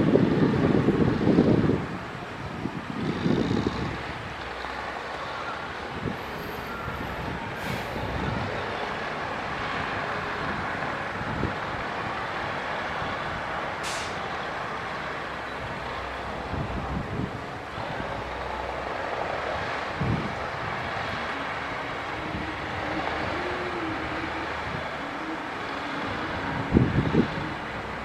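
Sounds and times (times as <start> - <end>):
heavy machinery running: 0.0 - 28.0
air hisses: 13.8 - 14.3.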